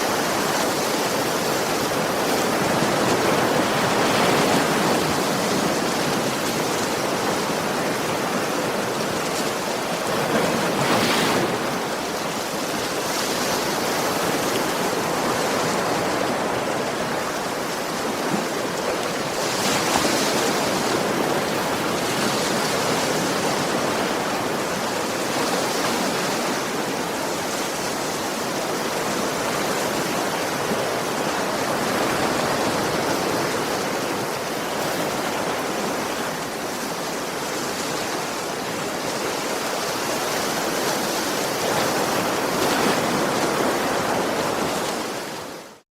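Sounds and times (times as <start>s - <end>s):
ocean waves breaking gently: 0.0s - 45.8s.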